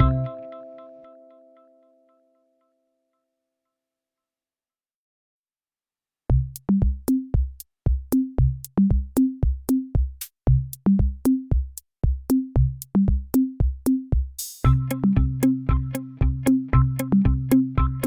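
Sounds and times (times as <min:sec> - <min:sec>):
drum machine beat: 0:00.0 - 0:00.3, 0:06.3 - 0:18.0.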